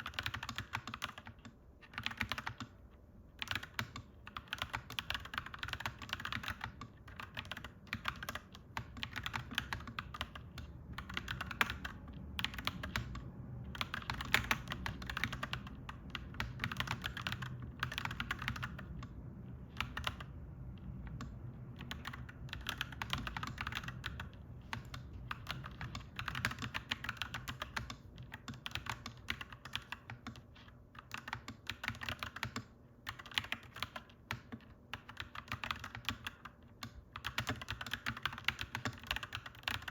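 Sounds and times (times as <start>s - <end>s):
mechanical keyboard typing: 0.0s - 39.9s
steady low rumble: 10.2s - 27.5s.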